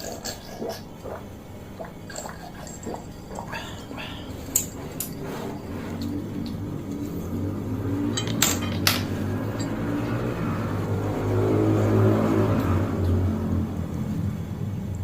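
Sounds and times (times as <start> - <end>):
cutlery clinking on a bowl: 8.1 - 10.0.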